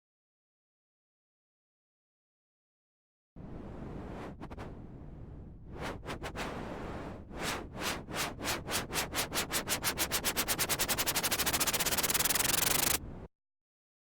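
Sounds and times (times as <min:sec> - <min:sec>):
pulsing synthesized white noise: 0:10.3 - 0:13.0.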